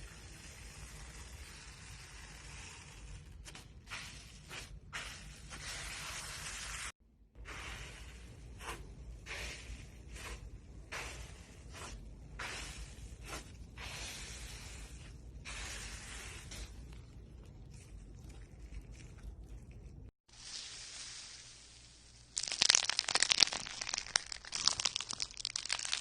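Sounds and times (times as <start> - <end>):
crunchy material crackling: 20.3 - 26.0.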